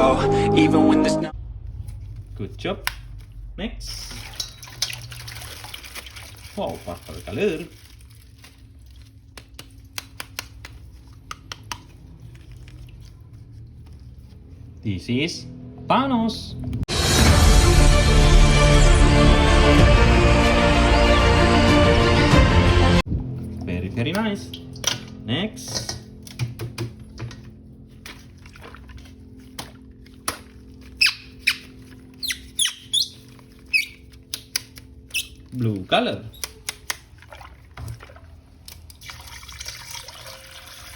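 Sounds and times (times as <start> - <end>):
low steady hum: 23.0 - 40.9
high squeaks falling in pitch: 32.2 - 34.0.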